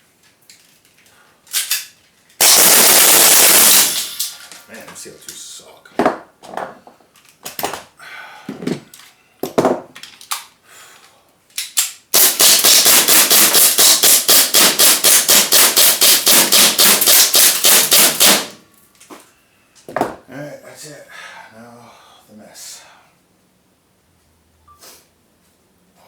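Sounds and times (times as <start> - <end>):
airsoft gun firing: 2.4 - 4.4, 12.1 - 18.6.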